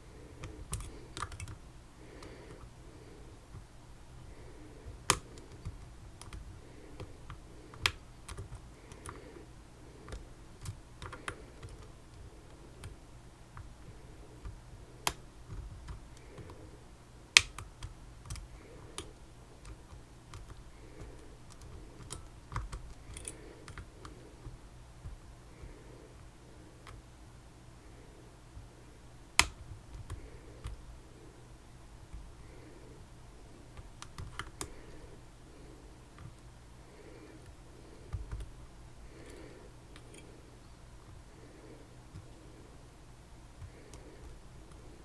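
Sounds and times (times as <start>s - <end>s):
lock picking tools clicking: 21.5s - 23.9s, 39.3s - 40.3s.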